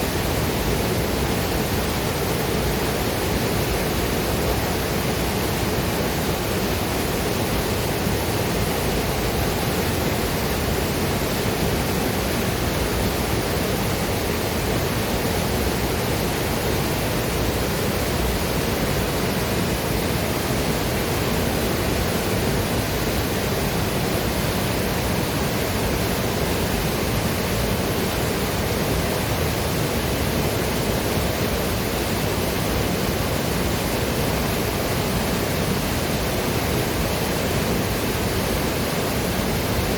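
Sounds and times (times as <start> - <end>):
waterfall and river rushing: 0.0 - 39.9.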